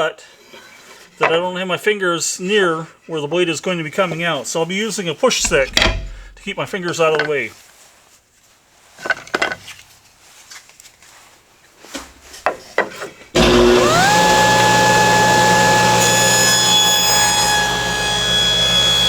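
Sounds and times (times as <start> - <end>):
wood knocks: 5.4 - 6.6
table saw whining: 13.4 - 19.0.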